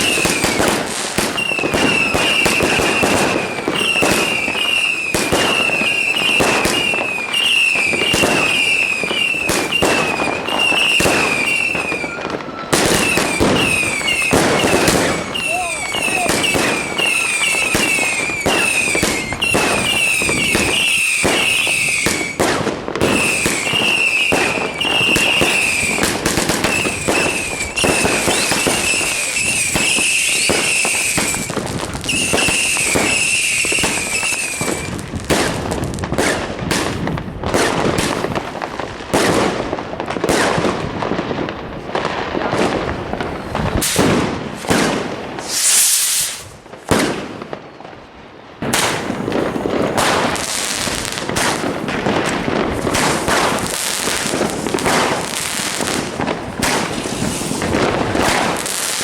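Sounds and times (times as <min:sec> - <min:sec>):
fireworks whistles: 0:00.0 - 0:39.4, 0:42.0 - 0:47.9, 0:48.6 - 0:59.0
fireworks bangs and crackling: 0:00.0 - 0:59.0
brief hiss: 0:45.4 - 0:46.6.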